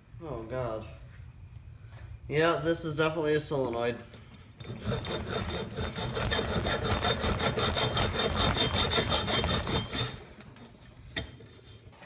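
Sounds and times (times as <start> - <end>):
hacksaw sawing through metal: 4.6 - 10.2.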